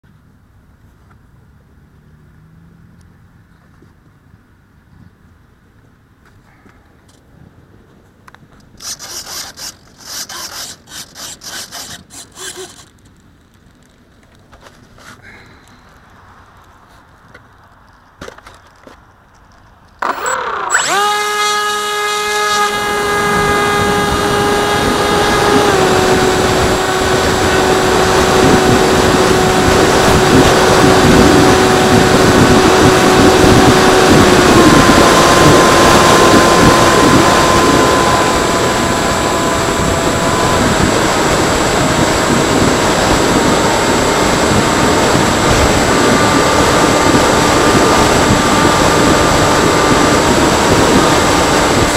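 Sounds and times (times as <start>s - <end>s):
electric motor whining: 8.8s - 13.0s, 20.0s - 51.9s.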